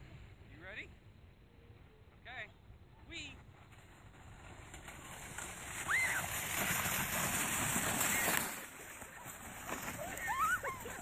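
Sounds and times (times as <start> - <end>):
sled scraping over snow: 3.2 - 11.0.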